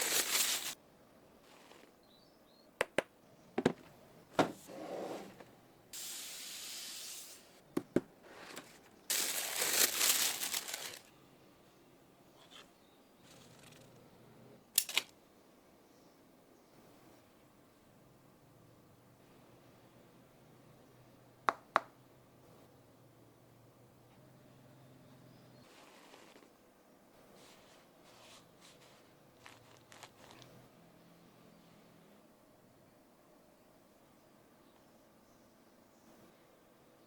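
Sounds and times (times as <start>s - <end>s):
wrapping rustling: 0.0s - 0.8s, 8.4s - 11.1s, 25.6s - 26.6s, 27.4s - 30.6s
steady hiss: 5.9s - 7.6s.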